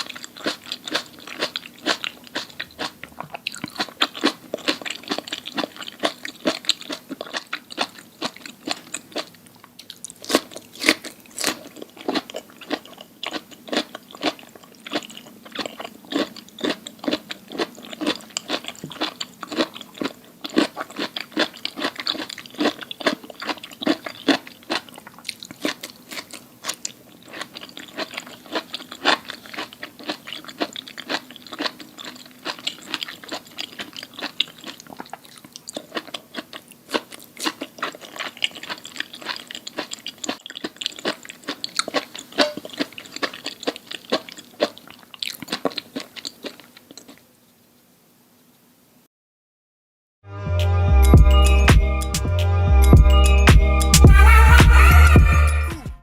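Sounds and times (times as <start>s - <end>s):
person chewing crunchy food: 0.0s - 47.4s, 53.9s - 55.8s.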